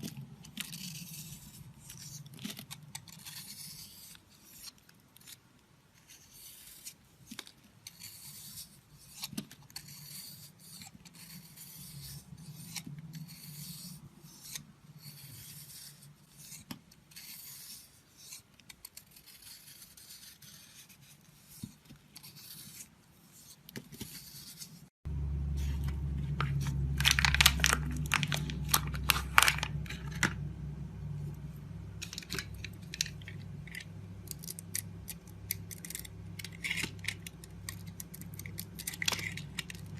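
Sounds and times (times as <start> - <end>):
knife scraping soap: 0.0 - 24.9, 32.0 - 39.9
low steady hum: 25.0 - 39.9.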